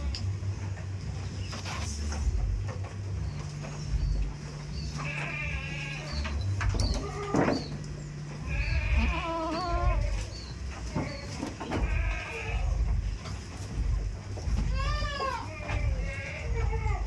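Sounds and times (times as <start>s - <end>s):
low rumbling background noise: 0.0s - 17.0s
goats bleating: 4.0s - 13.4s, 14.5s - 17.0s.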